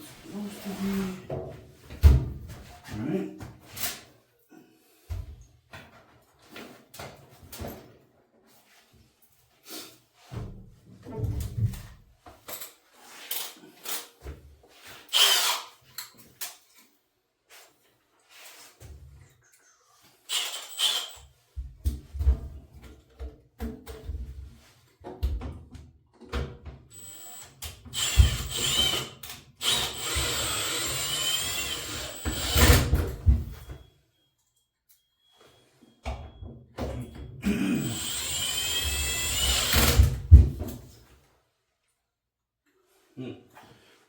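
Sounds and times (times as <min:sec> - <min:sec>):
power drill motor whine: 0:28.0 - 0:29.0, 0:29.6 - 0:32.8, 0:37.8 - 0:40.0.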